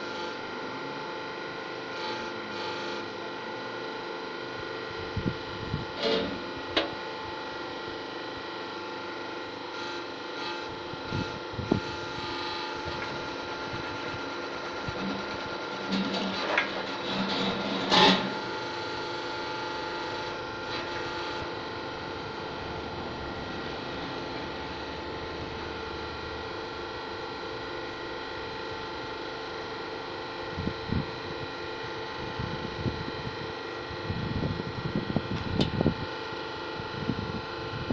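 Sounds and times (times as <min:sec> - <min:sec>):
welding machine humming: 0:00.0 - 0:37.9.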